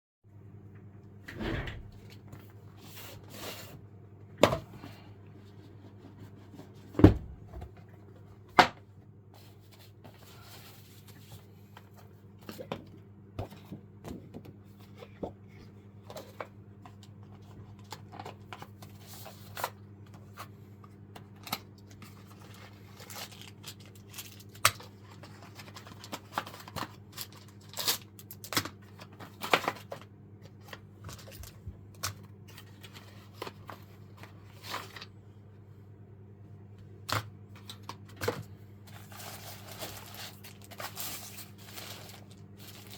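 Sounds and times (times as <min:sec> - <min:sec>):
faint steady hum: 0:00.3 - 0:42.9
clicks and rustling of packaging: 0:16.0 - 0:35.2, 0:37.0 - 0:42.9.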